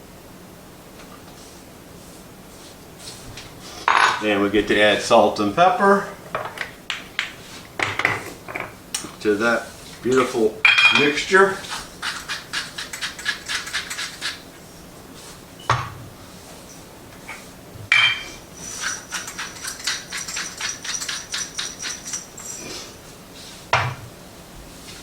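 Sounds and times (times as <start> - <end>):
kitchen utensils clinking: 3.8 - 4.8, 6.2 - 14.4, 17.2 - 23.0
loud knocks: 23.7 - 24.1.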